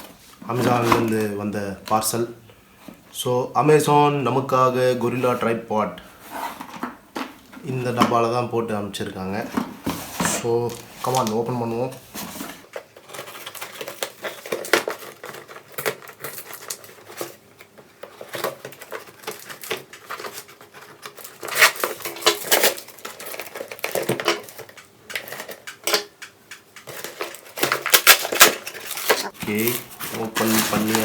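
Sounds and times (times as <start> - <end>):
packaging rustling and tearing: 12.3 - 31.0.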